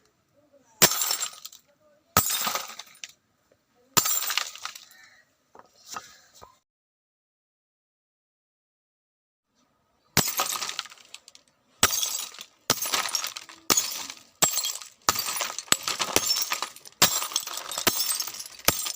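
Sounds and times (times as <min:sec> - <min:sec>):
glass shattering: 0:00.8 - 0:01.6, 0:02.2 - 0:03.1, 0:04.0 - 0:04.8, 0:10.2 - 0:18.9.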